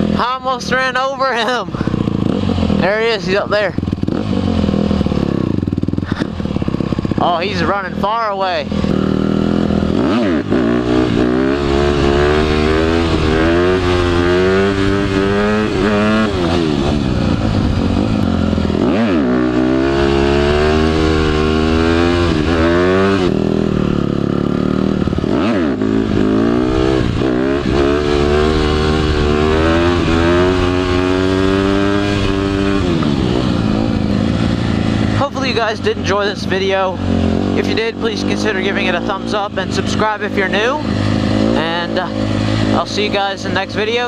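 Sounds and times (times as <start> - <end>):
dirt bike engine revving: 0.0 - 44.0.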